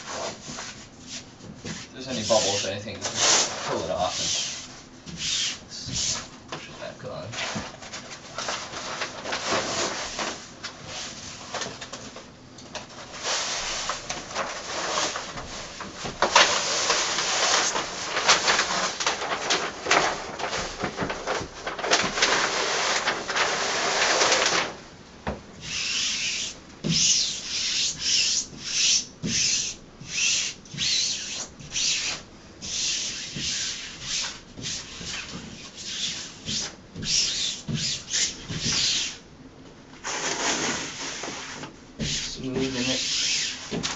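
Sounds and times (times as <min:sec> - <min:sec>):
hands sweeping over wallpaper: 0:00.0 - 0:06.3, 0:07.4 - 0:11.6, 0:13.0 - 0:24.4, 0:40.0 - 0:43.9
backing paper peeling off: 0:13.2 - 0:24.8.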